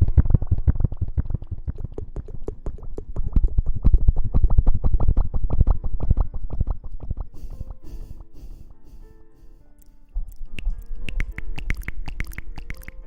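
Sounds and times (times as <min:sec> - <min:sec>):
fingers scratching and rubbing hair: 0:09.8 - 0:13.0.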